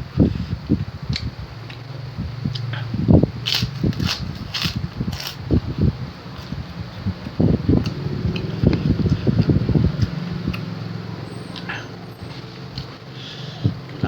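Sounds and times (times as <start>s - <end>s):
fan humming: 0.0s - 14.0s
person chewing: 2.5s - 5.6s, 6.3s - 13.0s.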